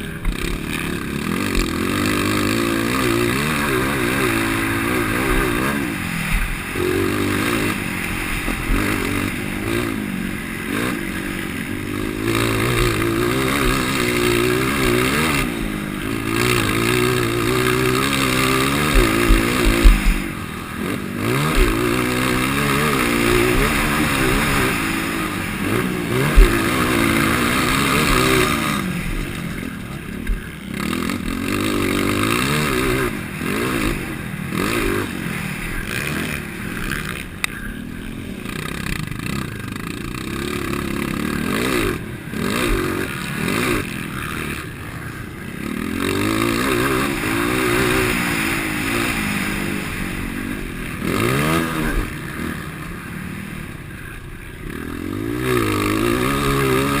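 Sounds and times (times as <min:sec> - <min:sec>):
clatter and scraping from bike: 0:00.0 - 0:20.4
motocross bike engine revving: 0:00.0 - 0:57.0.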